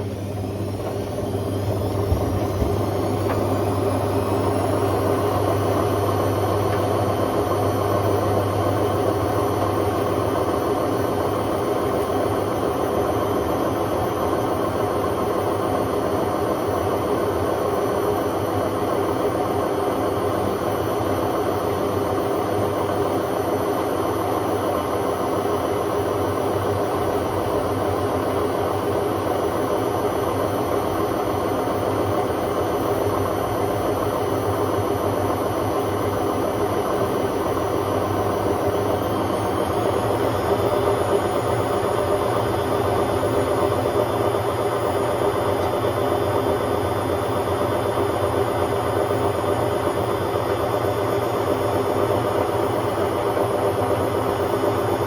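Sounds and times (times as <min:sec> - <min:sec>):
high motor whine: 0:00.0 - 0:15.7, 0:30.5 - 0:54.9
washing machine spinning: 0:00.0 - 0:55.0.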